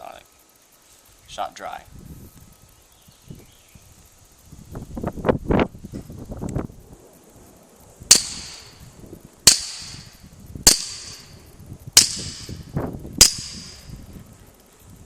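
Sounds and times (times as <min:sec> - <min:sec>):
suppressed pistol shots: 0:08.1 - 0:08.8, 0:09.5 - 0:10.1, 0:10.7 - 0:11.3, 0:13.2 - 0:13.9.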